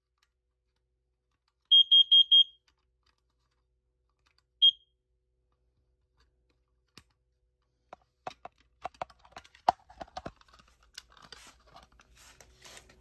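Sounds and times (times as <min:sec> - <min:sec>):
plastic smoke alarm clicking: 0:01.7 - 0:02.8.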